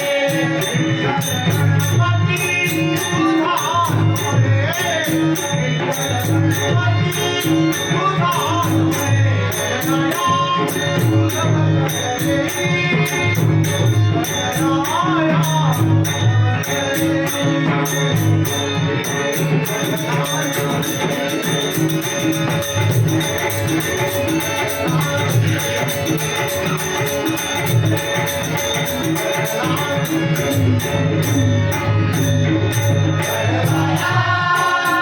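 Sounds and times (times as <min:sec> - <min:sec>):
devotional singing: 0:00.0 - 0:30.8, 0:33.0 - 0:35.0
jingling metal hand percussion: 0:00.0 - 0:35.0
drum rhythm: 0:12.0 - 0:35.0.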